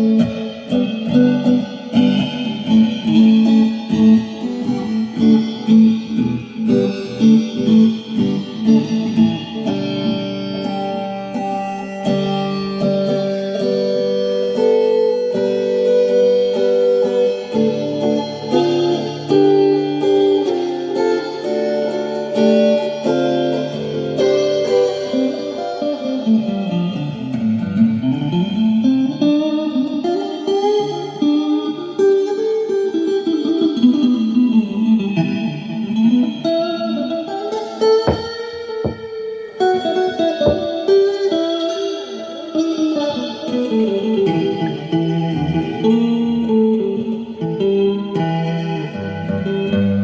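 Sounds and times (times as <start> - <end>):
guitar improvisation: 0.0 - 50.0
sharp percussive hits: 38.1 - 39.2.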